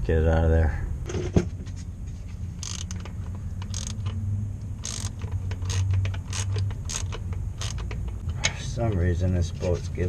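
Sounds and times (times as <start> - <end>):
socket ratchet clicking: 2.6 - 4.2, 4.8 - 8.2.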